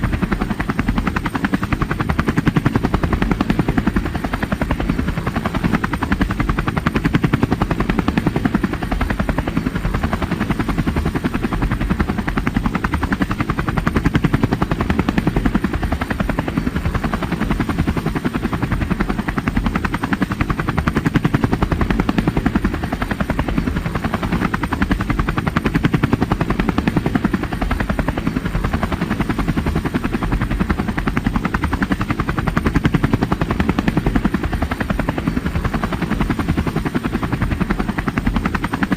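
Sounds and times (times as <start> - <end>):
helicopter engine drone: 0.0 - 38.9
helicopter rotor chopping: 0.0 - 38.9.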